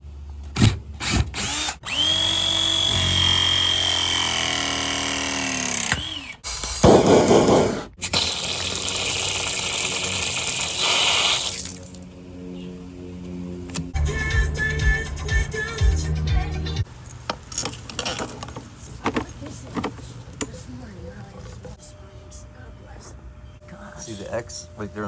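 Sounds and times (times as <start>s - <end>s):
power tool motor whining: 1.0s - 7.7s.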